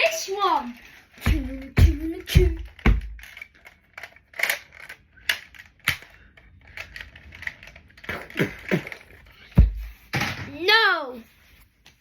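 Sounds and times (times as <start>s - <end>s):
plastic toy blasters clattering: 0.0s - 9.4s
heavy thump: 9.6s - 10.4s.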